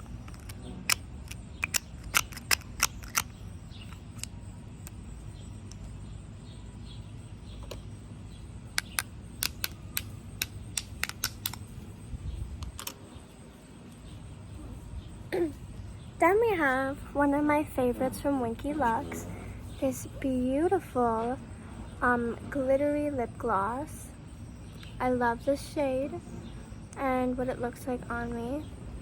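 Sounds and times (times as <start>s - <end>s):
plastic tubes and caps clicking: 0.0s - 5.0s, 8.7s - 11.8s, 12.6s - 13.0s.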